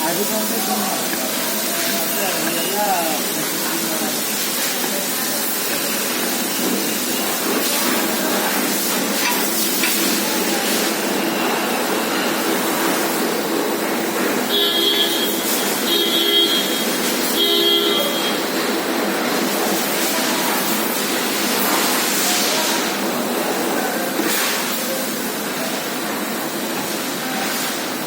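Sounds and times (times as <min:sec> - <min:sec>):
traffic noise: 0:00.0 - 0:28.0
vehicle horn honking: 0:14.5 - 0:18.4.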